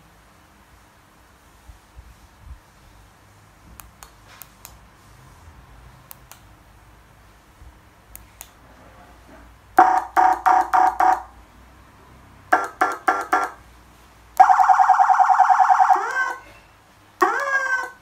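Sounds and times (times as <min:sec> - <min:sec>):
electronic siren tones: 0:09.8 - 0:11.3, 0:14.4 - 0:16.5, 0:17.2 - 0:18.0.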